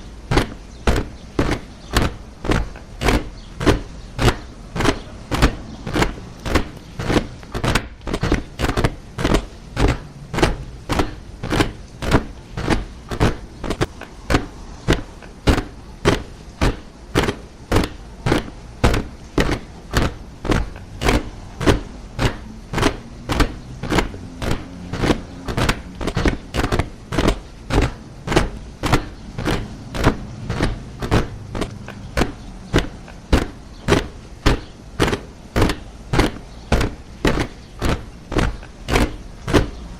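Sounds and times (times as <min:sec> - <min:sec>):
soldiers marching in step: 0:00.0 - 0:39.9.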